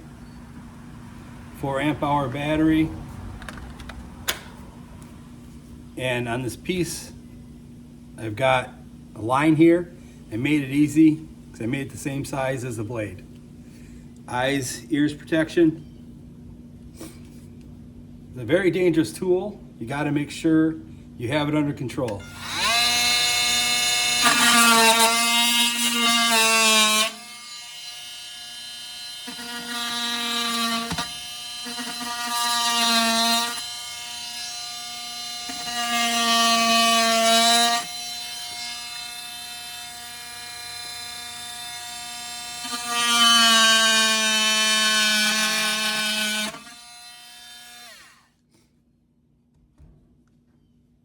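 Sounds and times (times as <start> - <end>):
oscillating multi-tool buzzing whine: 22.1 - 48.3
power tool winding down: 22.2 - 48.2.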